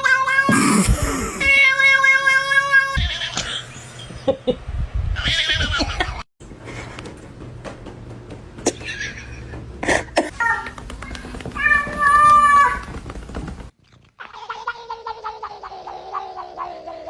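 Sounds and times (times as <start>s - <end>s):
cat meowing: 11.6s - 12.8s.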